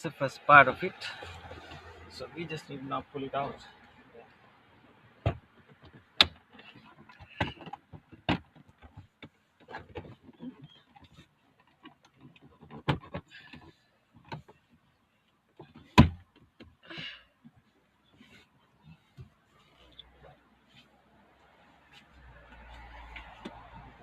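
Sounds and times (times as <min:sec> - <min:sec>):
dashboard panel clicks and knocks: 0:05.2 - 0:10.4, 0:15.6 - 0:16.8.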